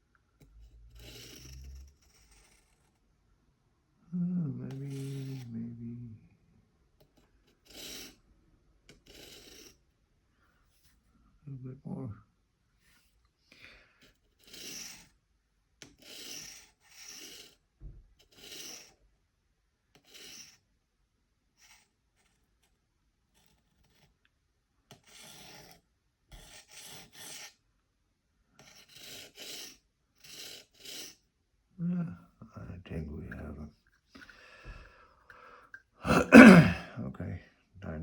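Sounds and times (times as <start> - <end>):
stone rasping along knife blade: 1.0 - 2.9, 7.5 - 8.2, 8.9 - 9.7, 14.2 - 15.1, 15.8 - 17.6, 18.2 - 19.0, 20.0 - 20.6, 24.9 - 27.6, 28.6 - 31.2.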